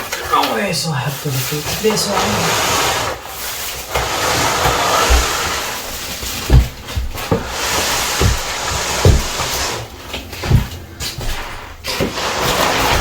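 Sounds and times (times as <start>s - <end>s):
cardboard box and foam rustling: 0.0s - 13.0s
dull low thumps: 5.1s - 11.8s.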